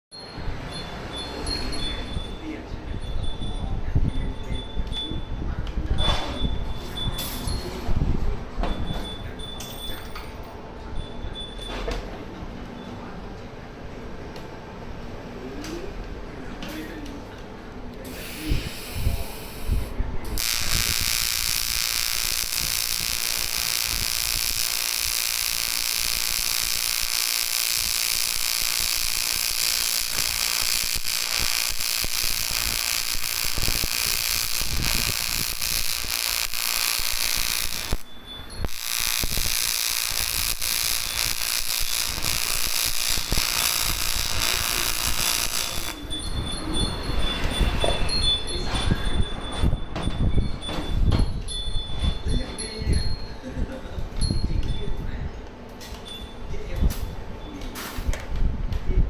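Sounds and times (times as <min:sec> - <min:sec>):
welding arc buzzing: 0:18.1 - 0:46.1.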